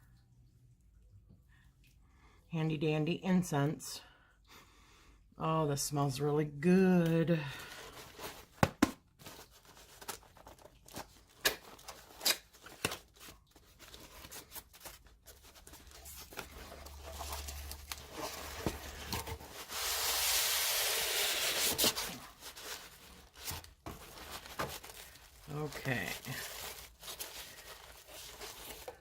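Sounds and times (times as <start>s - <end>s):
packaging rustling and knocking: 7.7s - 29.0s
packaging tearing and crinkling: 7.8s - 29.0s.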